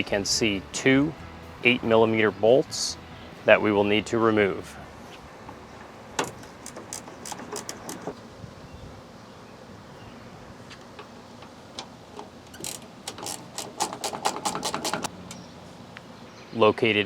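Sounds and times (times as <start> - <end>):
hand ratchet clicking: 6.2 - 8.1, 12.5 - 15.1.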